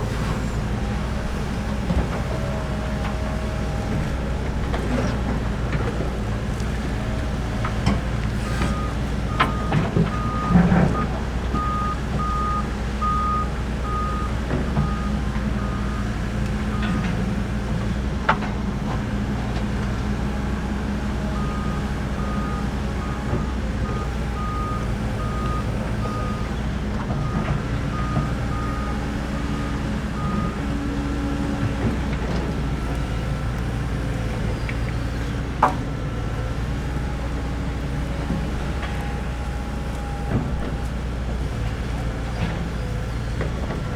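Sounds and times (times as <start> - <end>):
excavator diesel engine running: 0.0 - 43.9
travel alarm beeping: 8.7 - 16.0.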